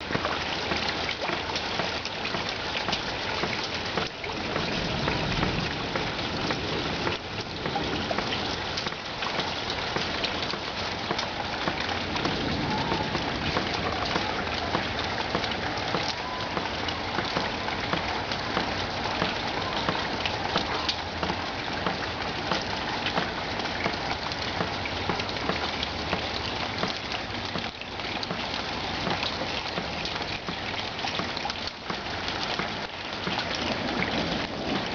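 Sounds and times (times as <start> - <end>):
hail falling heavily: 3.8 - 20.5.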